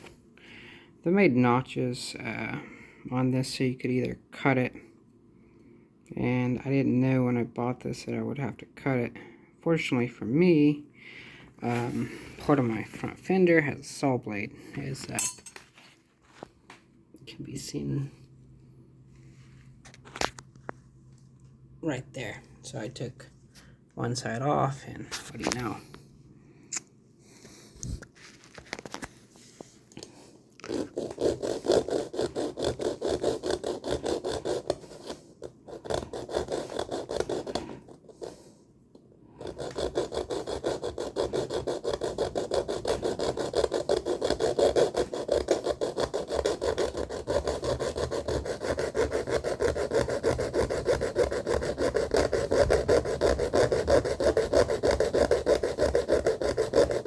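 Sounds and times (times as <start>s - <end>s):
hand saw cutting metal: 30.7s - 34.9s, 35.8s - 37.8s, 39.4s - 57.0s.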